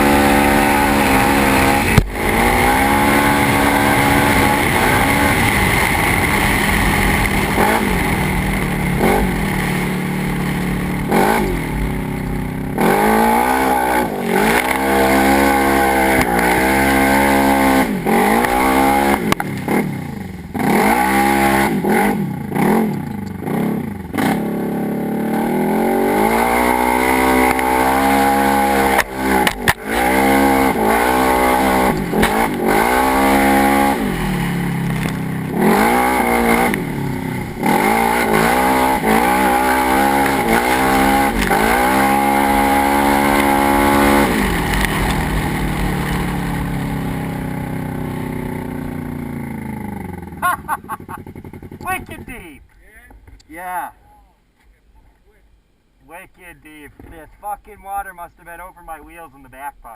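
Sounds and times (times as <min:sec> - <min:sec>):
steady rushing noise: 0:00.0 - 0:50.4
engine revving: 0:00.0 - 0:52.3
sharp knocks: 0:32.0 - 0:32.7.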